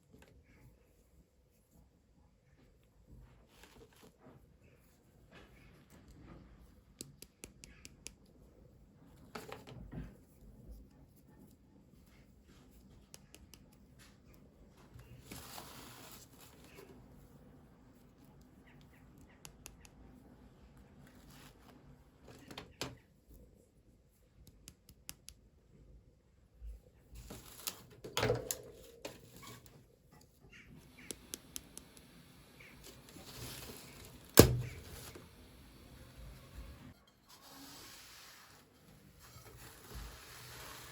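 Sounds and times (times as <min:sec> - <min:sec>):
small clicks and taps: 0:06.9 - 0:08.4, 0:30.9 - 0:32.2.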